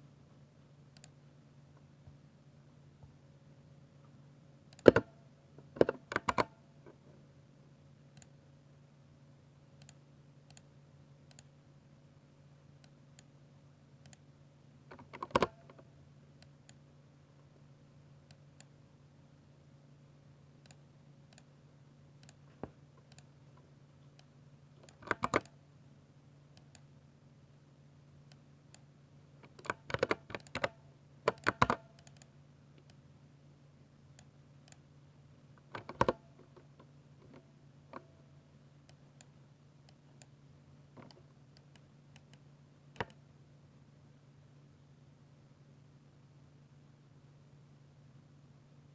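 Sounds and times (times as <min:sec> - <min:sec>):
mechanical keyboard typing: 0:05.8 - 0:06.5, 0:24.8 - 0:25.5, 0:29.5 - 0:32.3, 0:35.6 - 0:36.2.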